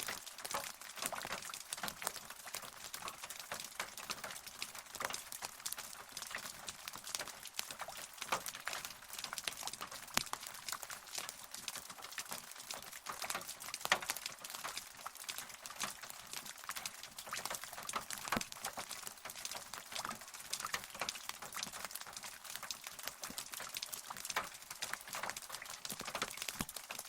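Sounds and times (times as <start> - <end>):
rain drops pattering: 0.0 - 27.0.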